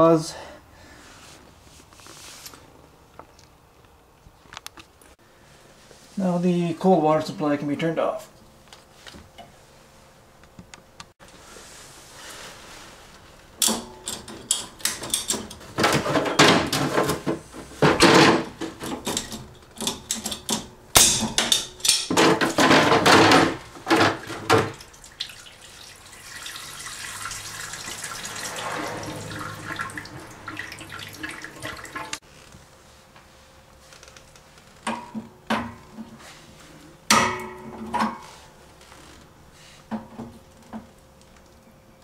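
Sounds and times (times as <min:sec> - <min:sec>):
water gushing from plumbing: 0:24.7 - 0:32.2.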